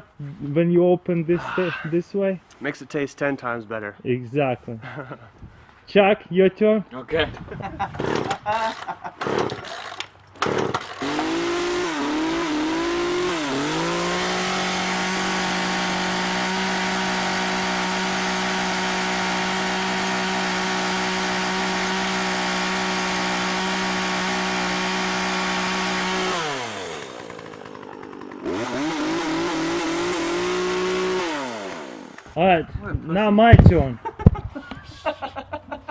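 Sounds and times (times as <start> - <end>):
chainsaw engine revving: 7.9 - 32.4.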